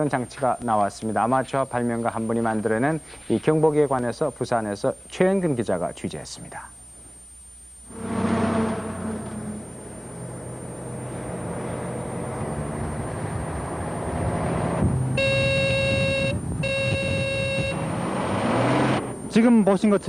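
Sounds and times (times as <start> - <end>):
electronic warning buzzer: 1.5 - 20.0
car engine and road noise: 7.9 - 19.6.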